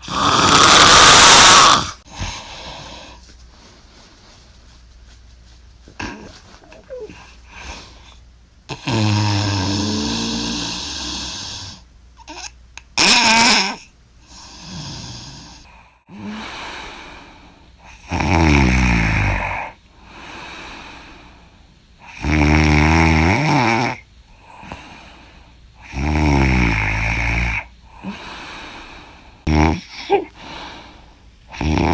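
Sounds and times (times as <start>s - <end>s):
woman snoring: 0.0s - 3.2s, 6.0s - 7.8s, 8.7s - 11.8s, 13.0s - 21.2s, 22.1s - 24.9s, 25.8s - 31.9s
soft breaths: 2.0s - 11.9s, 14.2s - 18.1s, 19.3s - 22.2s, 24.2s - 26.0s, 27.6s - 31.6s.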